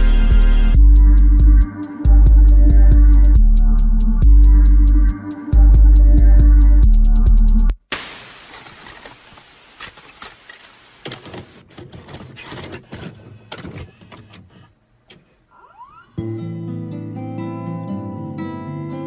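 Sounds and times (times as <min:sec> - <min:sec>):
hissing static with crackles: 0:07.8 - 0:11.6
guitar music: 0:16.2 - 0:19.0.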